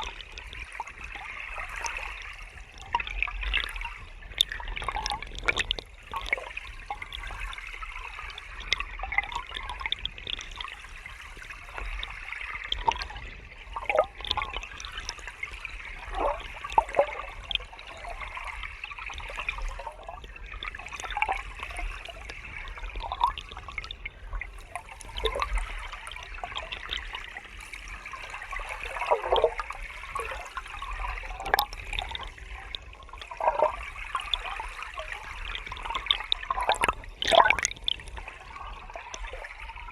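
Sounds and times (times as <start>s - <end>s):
low water rumble: 0.0s - 39.9s
water splashes and gurgles: 0.0s - 39.9s.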